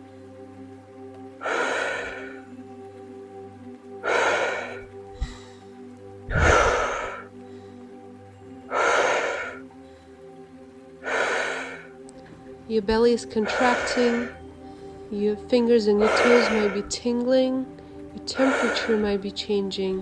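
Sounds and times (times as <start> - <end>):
soft music: 0.0 - 20.0
woman breathing forcefully: 1.4 - 2.5, 4.0 - 8.0, 8.7 - 10.2, 11.0 - 12.0, 13.3 - 15.1, 16.0 - 17.0, 17.8 - 19.2.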